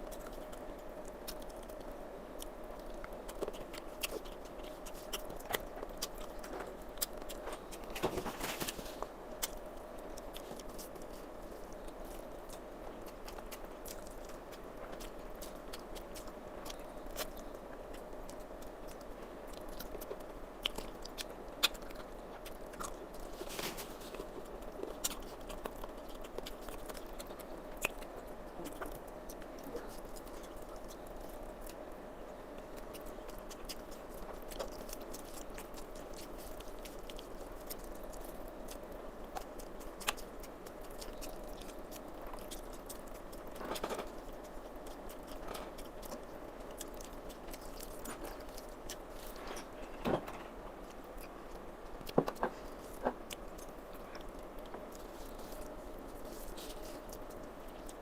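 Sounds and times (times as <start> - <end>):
faint steady hum: 0.0 - 58.0
person chewing food: 0.0 - 58.0.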